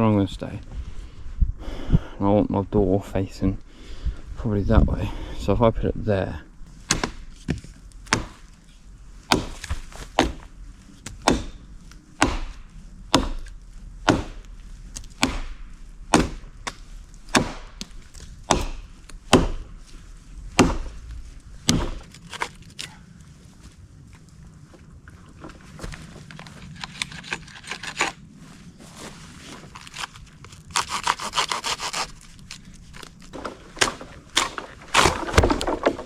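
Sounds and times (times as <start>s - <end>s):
hand axe chopping wood: 6.9s - 8.4s, 9.3s - 10.5s, 11.1s - 11.6s, 12.2s - 13.5s, 14.1s - 14.5s, 15.1s - 17.9s, 18.5s - 19.7s, 20.6s - 21.0s, 21.6s - 22.5s, 33.4s - 36.0s.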